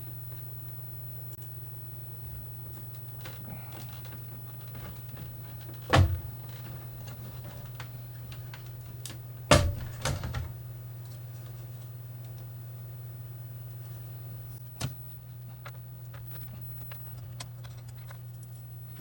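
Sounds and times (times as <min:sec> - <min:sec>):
steady low hum: 0:00.0 - 0:19.0
pieces knocking on workbench: 0:09.5 - 0:10.6.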